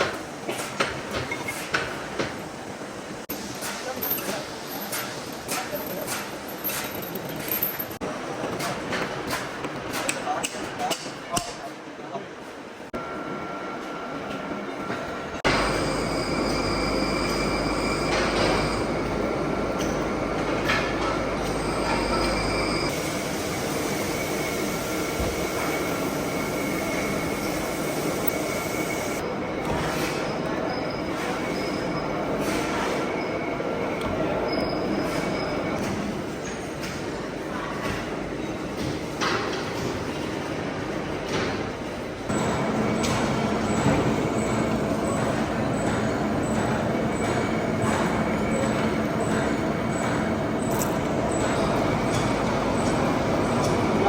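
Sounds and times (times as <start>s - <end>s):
machine tool running: 42.3s - 54.0s.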